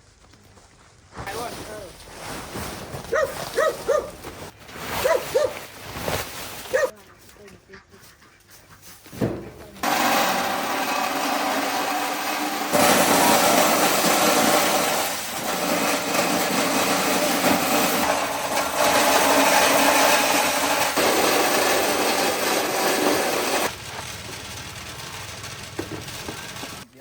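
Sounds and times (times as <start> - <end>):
motorised corn sheller running: 9.8 - 26.9.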